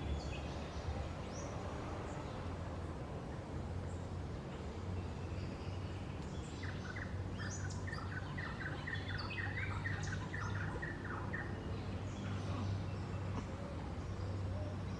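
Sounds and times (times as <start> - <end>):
bird chirping: 4.9 - 14.9.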